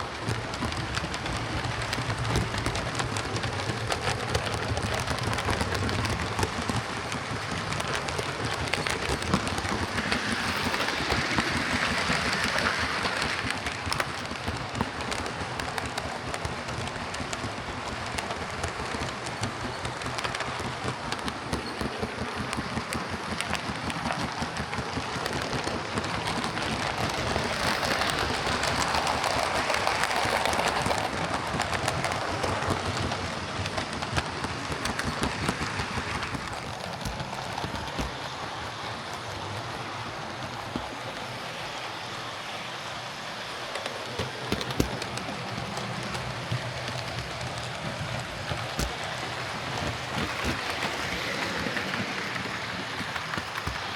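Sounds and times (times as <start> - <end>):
fast clicks of wheels on track: 0.0 - 53.9
model train wheels rumbling on rails: 0.0 - 53.9.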